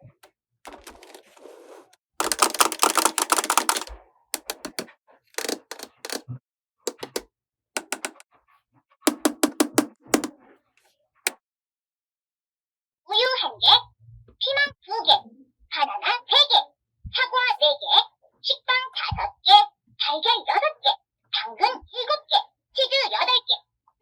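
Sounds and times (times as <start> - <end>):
plastic clicks and taps: 0.7 - 1.4, 2.2 - 6.2, 6.9 - 7.2, 7.8 - 8.2, 9.1 - 10.3
plastic toy pieces rattling: 0.7 - 1.5, 2.2 - 6.2, 6.9 - 7.2, 7.8 - 8.2.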